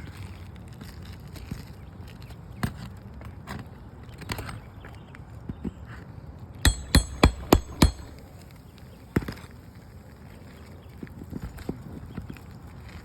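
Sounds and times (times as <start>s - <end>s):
hammer strikes with metallic ring: 6.7s - 8.1s.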